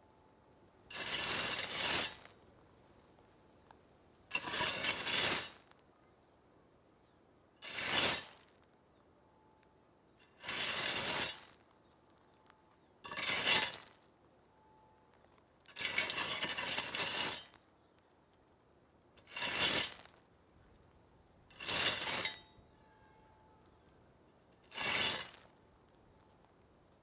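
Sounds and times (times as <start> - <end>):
shovel scraping into soil: 4.3 - 5.6, 10.4 - 11.6, 13.1 - 14.0, 19.2 - 20.2, 21.6 - 22.4, 24.7 - 25.5.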